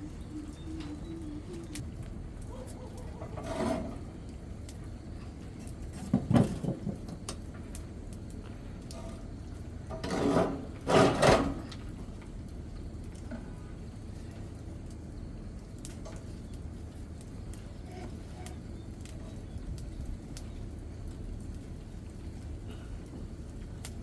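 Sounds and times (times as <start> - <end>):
wooden scrapes: 3.4 - 4.0, 10.0 - 11.6.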